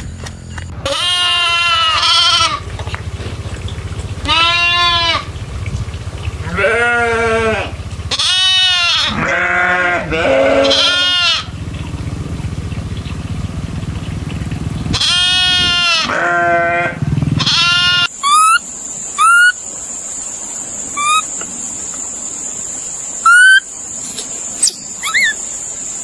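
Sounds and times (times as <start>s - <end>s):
steady low hum: 0.0s - 15.8s
livestock bleating: 0.8s - 2.7s, 4.2s - 5.3s, 6.4s - 11.5s, 15.0s - 18.1s.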